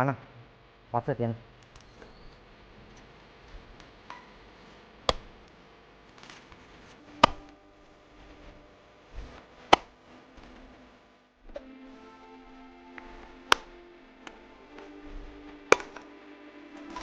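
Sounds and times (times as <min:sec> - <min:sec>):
hoe striking stony ground: 0:07.2 - 0:07.5.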